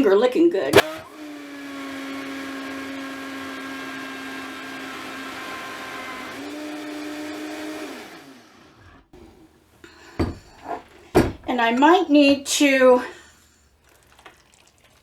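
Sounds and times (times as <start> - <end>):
blender motor whining: 0.7 - 9.5.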